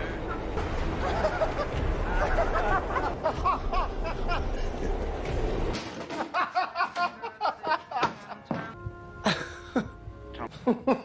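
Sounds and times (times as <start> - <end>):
low street noise rumble: 0.0 - 5.8
snickering laughter: 6.2 - 11.0.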